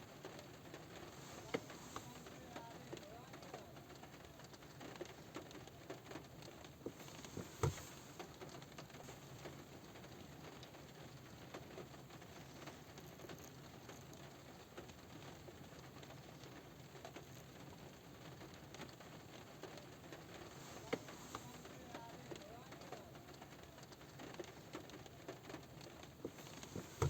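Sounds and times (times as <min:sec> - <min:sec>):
light rain on a car roof: 0:00.0 - 0:27.0.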